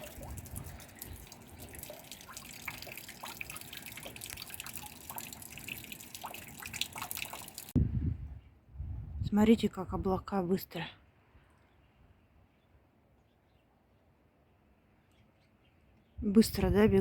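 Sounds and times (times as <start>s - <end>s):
light drizzle: 0.0s - 7.8s
rainwater dripping: 0.0s - 7.8s.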